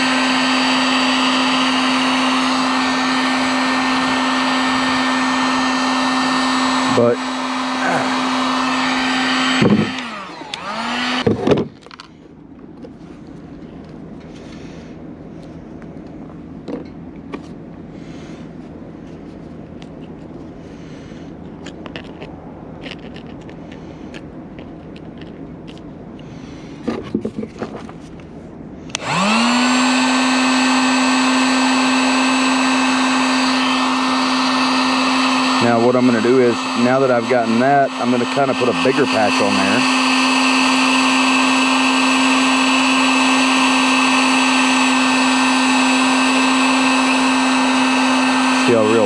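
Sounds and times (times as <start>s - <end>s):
heat gun fan motor whine: 0.0s - 12.2s, 28.8s - 49.0s
low hum: 0.0s - 32.0s.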